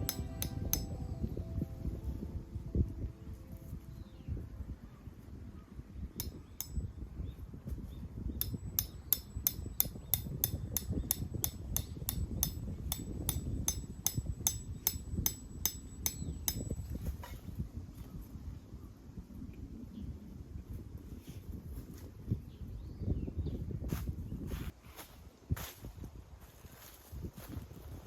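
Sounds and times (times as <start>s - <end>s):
hammer striking tent peg: 0.0s - 1.1s, 6.2s - 6.9s, 8.4s - 17.0s
low rumble: 0.0s - 5.2s.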